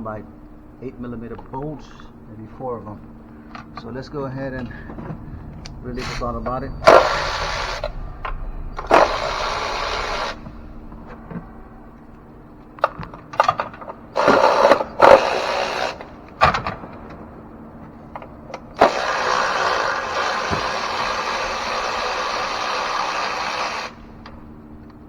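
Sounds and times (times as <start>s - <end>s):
power tool whirring: 14.2s - 16.1s, 18.8s - 24.1s.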